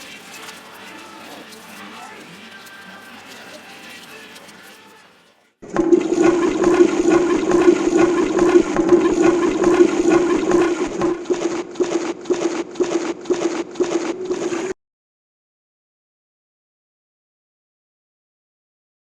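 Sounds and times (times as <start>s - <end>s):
water rushing and gurgling: 5.6s - 14.7s.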